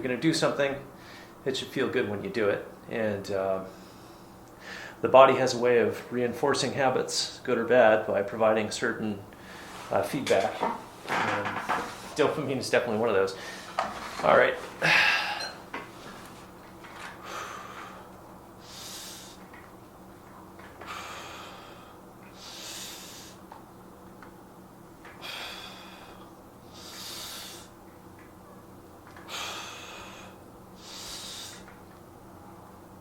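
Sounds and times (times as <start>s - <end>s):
man breathing deeply: 1.0s - 1.4s, 3.7s - 5.0s, 9.4s - 9.9s, 13.4s - 13.8s, 14.8s - 15.6s, 17.2s - 19.5s, 20.8s - 23.5s, 25.1s - 27.8s, 29.2s - 31.7s.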